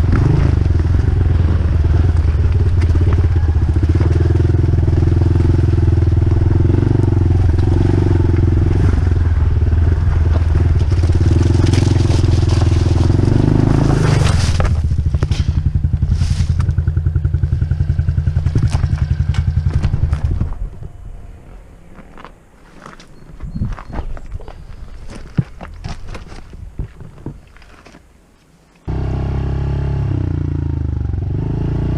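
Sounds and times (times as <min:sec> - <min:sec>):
dirt bike engine running: 0:00.0 - 0:20.9
scrapes and crackles: 0:00.5 - 0:17.6, 0:18.4 - 0:28.8.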